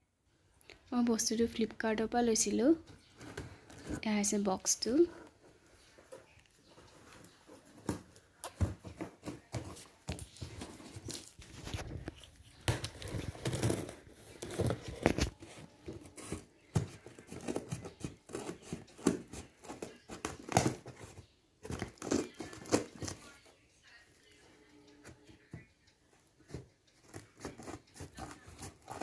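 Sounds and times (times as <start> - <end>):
packaging tearing and rustling: 10.9 - 15.4.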